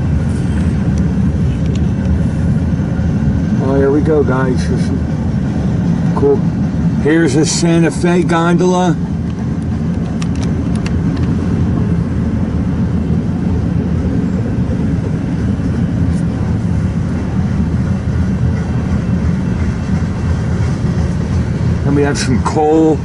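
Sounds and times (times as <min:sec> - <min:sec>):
train wheels rumbling on rail: 0:00.0 - 0:23.0.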